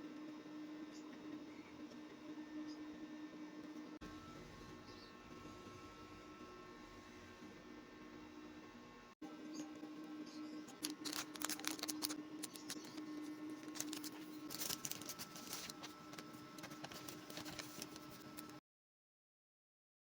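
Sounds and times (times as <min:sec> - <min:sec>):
paper rustling: 0:10.7 - 0:18.6
scissors snipping paper: 0:10.7 - 0:18.6.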